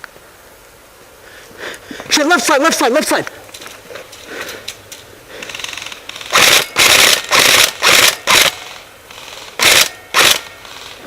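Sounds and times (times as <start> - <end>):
airsoft gun firing full-auto bursts: 5.4 - 11.0.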